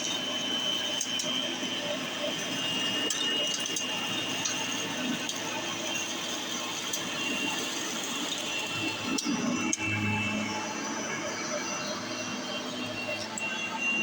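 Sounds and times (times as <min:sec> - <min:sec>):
upright vacuum running: 0:00.0 - 0:14.0.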